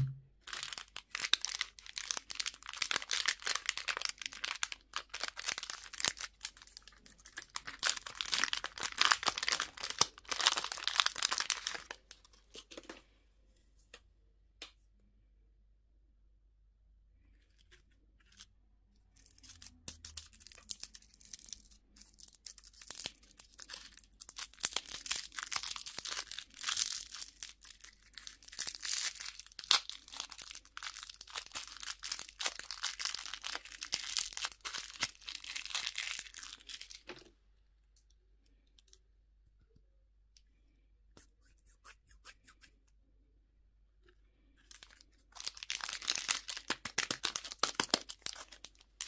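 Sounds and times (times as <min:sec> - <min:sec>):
candy wrapper crinkling and tearing: 0:00.4 - 0:12.9, 0:17.2 - 0:37.3, 0:44.4 - 0:49.0.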